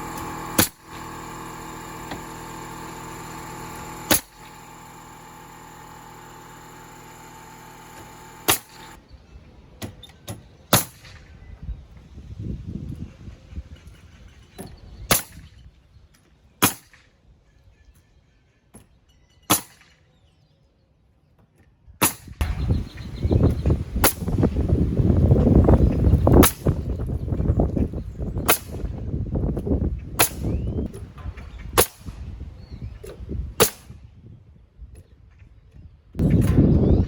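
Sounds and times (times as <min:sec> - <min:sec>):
air compressor motor running: 0:00.0 - 0:09.0, 0:22.4 - 0:28.9
pneumatic nail gun shots: 0:00.0 - 0:09.0, 0:10.7 - 0:11.2, 0:15.1 - 0:15.5, 0:16.6 - 0:17.1, 0:19.5 - 0:20.0, 0:22.0 - 0:24.7, 0:25.6 - 0:27.1, 0:28.4 - 0:29.0, 0:30.2 - 0:32.3, 0:33.0 - 0:34.0, 0:36.2 - 0:37.0.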